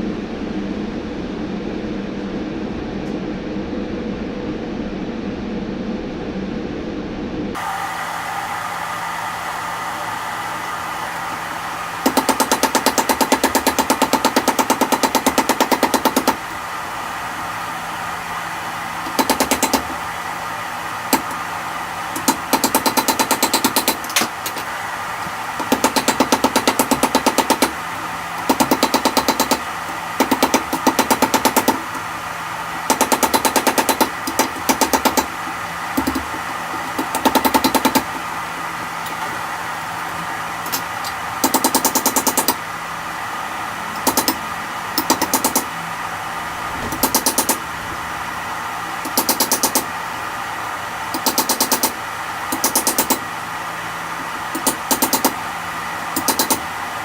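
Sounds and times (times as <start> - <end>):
rapid hammering on metal: 12.0 - 16.6, 19.0 - 20.1, 22.1 - 24.7, 25.6 - 32.2, 32.8 - 39.4, 40.6 - 42.6, 44.0 - 44.4, 45.0 - 45.7, 46.9 - 47.6, 49.0 - 49.9, 51.1 - 53.3, 54.5 - 55.4, 56.1 - 56.7.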